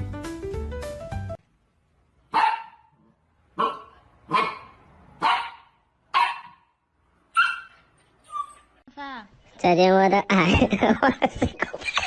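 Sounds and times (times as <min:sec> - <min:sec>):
dog barking: 0:02.3 - 0:06.8, 0:07.4 - 0:07.8.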